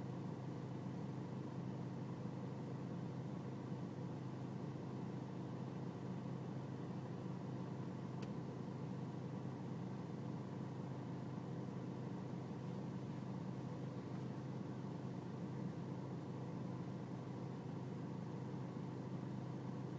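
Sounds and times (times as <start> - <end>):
diesel engine idling: 0.1 - 19.9
faint click: 8.2 - 8.4.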